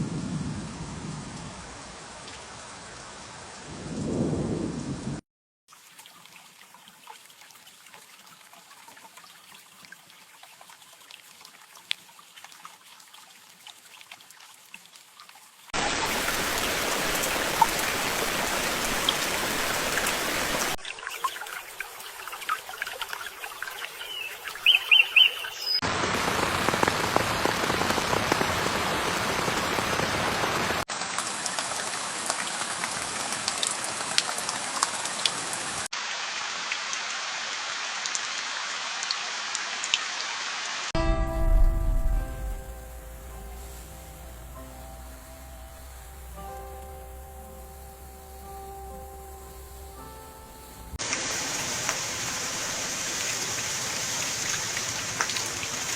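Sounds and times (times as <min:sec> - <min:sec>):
heavy rain: 0:15.8 - 0:20.8, 0:24.0 - 0:55.9
bird chirping: 0:23.8 - 0:25.8.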